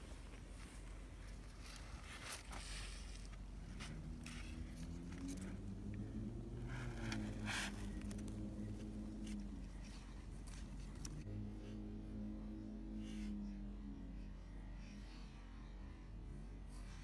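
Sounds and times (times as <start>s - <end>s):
rustling of grass and clothing: 0.0s - 5.7s
vehicle engine hum: 0.0s - 17.0s.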